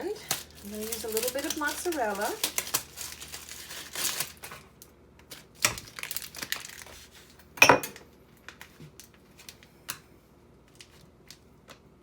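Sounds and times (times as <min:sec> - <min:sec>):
packaging crinkling: 0:00.0 - 0:07.4, 0:10.7 - 0:11.8.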